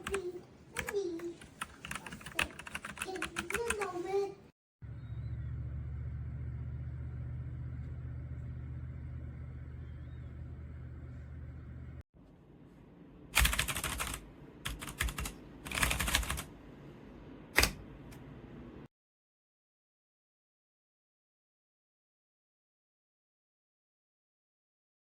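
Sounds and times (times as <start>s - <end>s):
mechanical keyboard typing: 0.0s - 0.2s, 1.6s - 3.9s, 13.4s - 16.5s
low hum: 4.8s - 13.2s.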